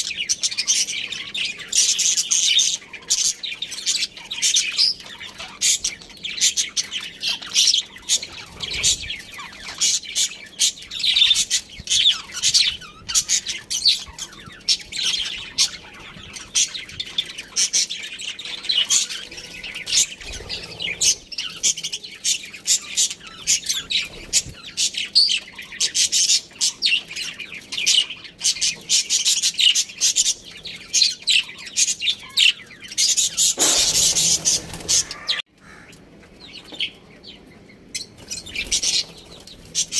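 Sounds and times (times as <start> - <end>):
budgerigars chirping: 0.0 - 35.9
harsh bird call: 33.3 - 35.9.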